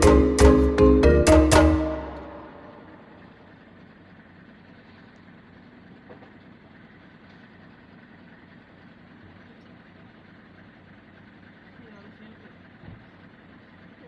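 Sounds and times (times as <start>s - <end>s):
low hum: 0.0s - 3.8s.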